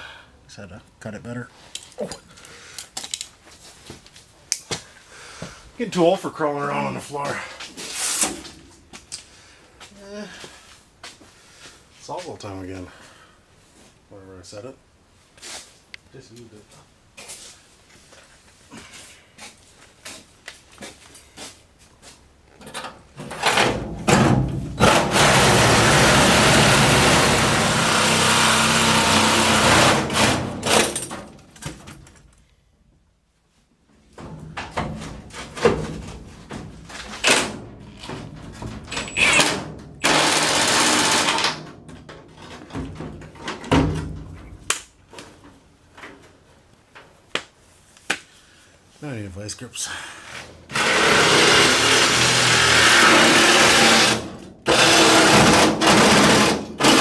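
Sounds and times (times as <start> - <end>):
clanks and knocks of metal: 22.6 - 25.4
reciprocating saw cutting sheet metal: 24.8 - 30.9, 38.9 - 41.6, 50.7 - 57.0.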